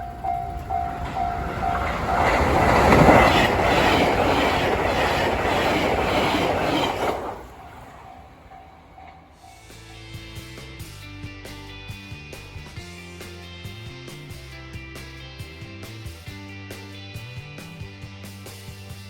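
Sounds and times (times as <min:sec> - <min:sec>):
level-crossing alarm ringing: 0:00.0 - 0:09.8
train passing at high speed: 0:00.0 - 0:10.6.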